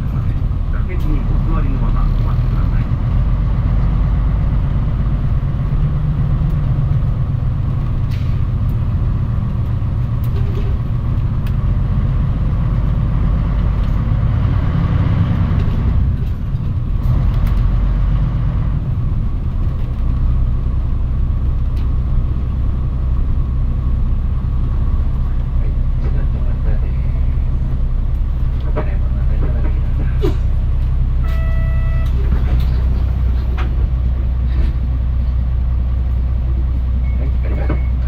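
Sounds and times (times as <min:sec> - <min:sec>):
diesel bus engine rumble: 0:00.0 - 0:38.0
road noise: 0:00.0 - 0:38.0.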